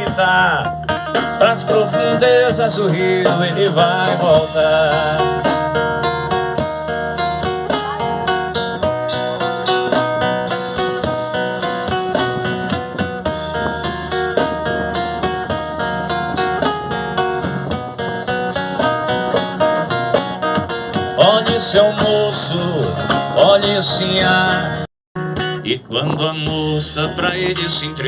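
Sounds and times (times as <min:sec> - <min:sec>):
plucked-string melody: 0:00.0 - 0:28.0
rhythmic percussion: 0:00.0 - 0:28.0.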